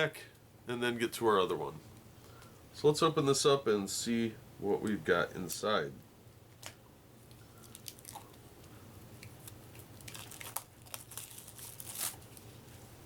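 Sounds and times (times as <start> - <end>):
card packaging crinkling: 9.4 - 12.6.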